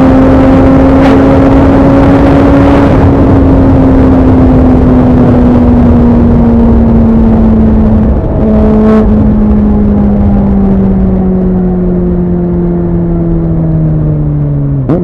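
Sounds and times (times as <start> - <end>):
motorcycle engine revs falling: 14.5 - 15.0.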